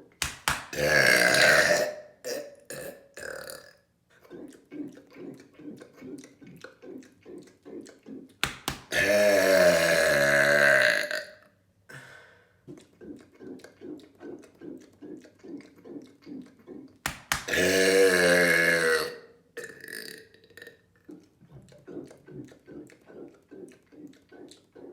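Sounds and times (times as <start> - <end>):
long loud burp: 0.8 - 3.8, 8.9 - 11.4, 17.5 - 20.8
soft rhythmic sounds: 4.0 - 9.0, 11.5 - 17.6, 20.6 - 24.9.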